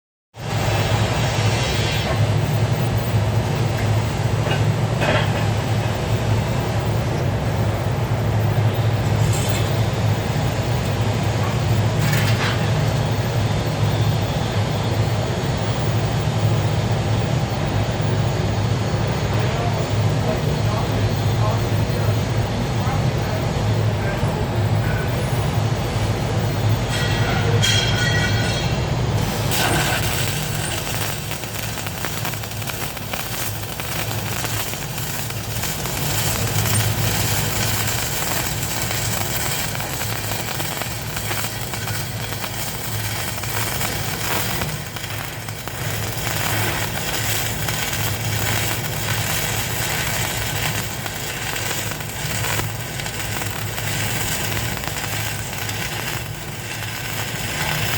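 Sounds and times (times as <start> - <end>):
arc welding crackling and hissing: 0.4 - 57.9
low machine hum: 28.7 - 57.9.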